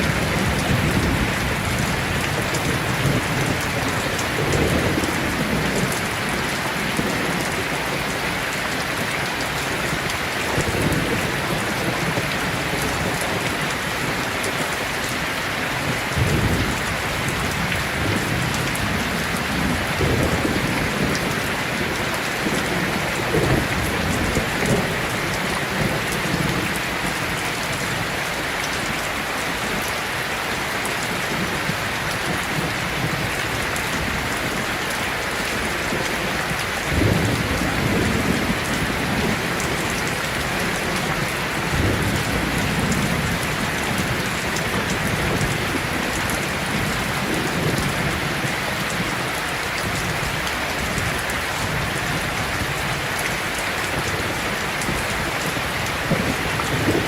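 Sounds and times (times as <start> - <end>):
thunder rumbling: 0.0 - 8.0, 9.5 - 14.4, 15.7 - 28.1, 35.4 - 57.0
heavy rain: 0.0 - 57.0.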